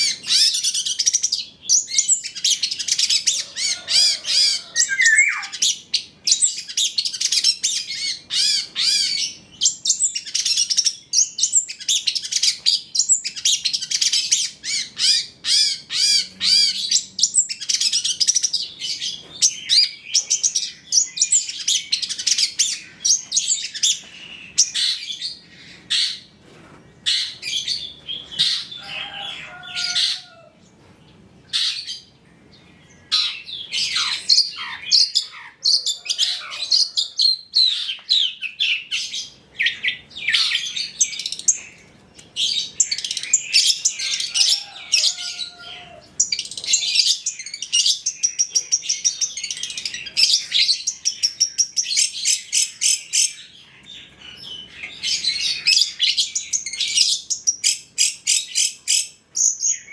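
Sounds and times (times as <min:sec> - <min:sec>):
mimicked bird calls: 0:00.0 - 0:09.5
shrike chattering song: 0:04.1 - 0:05.8.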